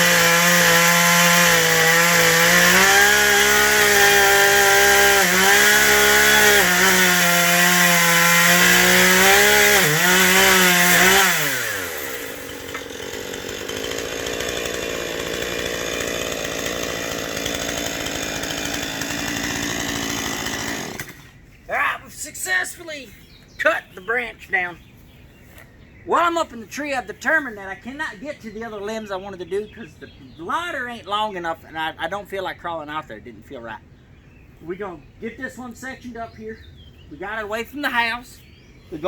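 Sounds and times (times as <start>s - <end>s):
chainsaw cutting branch: 0.0s - 21.4s.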